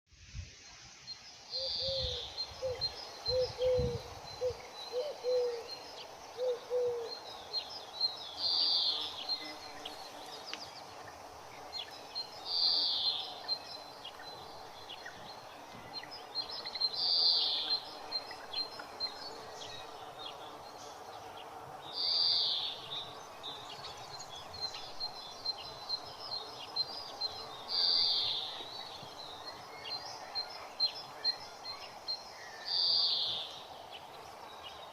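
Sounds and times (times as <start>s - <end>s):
birds chirping: 1.4s - 34.9s
low hooting bird: 1.6s - 5.7s, 6.4s - 7.1s.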